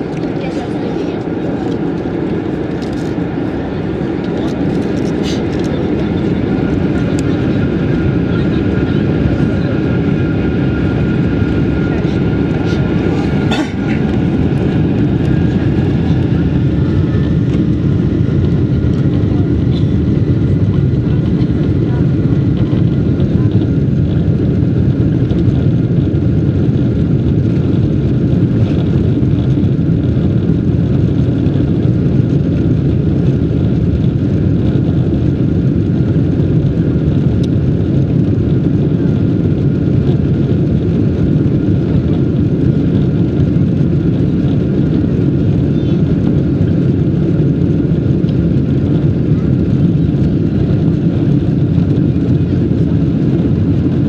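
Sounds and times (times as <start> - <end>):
jet engines rumbling: 0.0 - 54.0.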